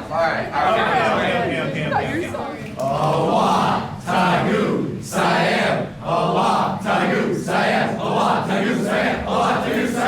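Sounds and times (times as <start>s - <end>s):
crowd chanting: 2.9s - 10.0s.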